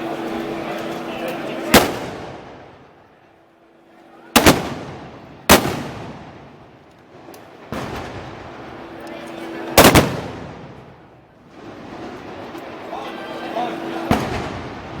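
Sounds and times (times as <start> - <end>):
gunshots with echoing decay: 4.4 - 6.6.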